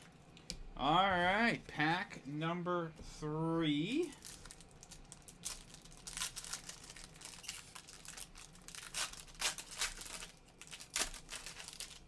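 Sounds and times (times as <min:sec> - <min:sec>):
wrapper tearing and crinkling: 0:04.0 - 0:12.0.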